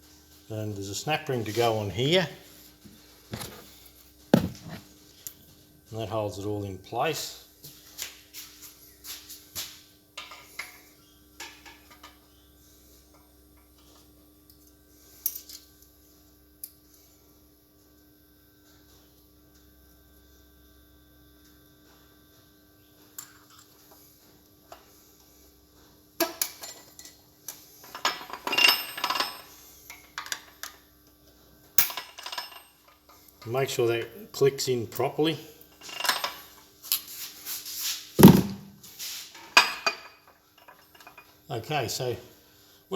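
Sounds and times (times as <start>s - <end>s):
tools clinking against metal: 4.4s - 4.8s.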